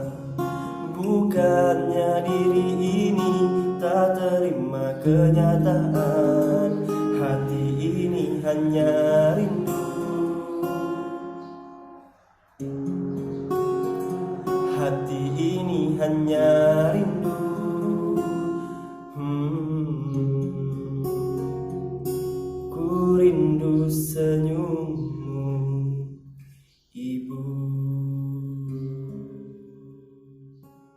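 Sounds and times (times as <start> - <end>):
person singing long notes: 0.0 - 11.6, 14.1 - 21.3
acoustic guitar: 0.0 - 30.9.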